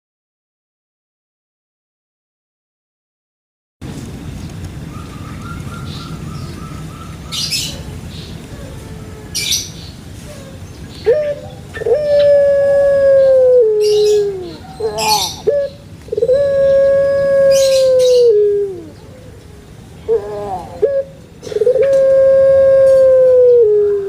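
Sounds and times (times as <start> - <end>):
dove cooing: 5.4 - 24.0.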